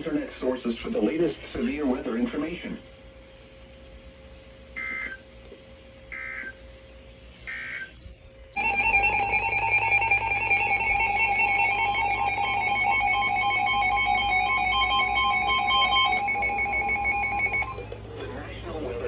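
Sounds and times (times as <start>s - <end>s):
steady dual alert tone: 8.6s - 18.1s.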